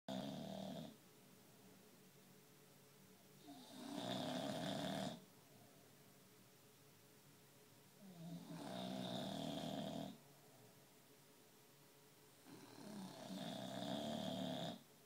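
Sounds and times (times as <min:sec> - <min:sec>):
pets snoring: 0:00.1 - 0:01.0, 0:03.4 - 0:05.2, 0:08.0 - 0:10.2, 0:12.4 - 0:14.8.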